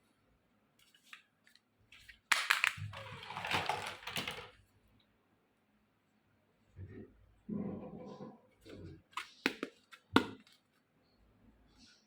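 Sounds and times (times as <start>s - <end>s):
plastic packaging crinkling: 0.9s - 4.6s.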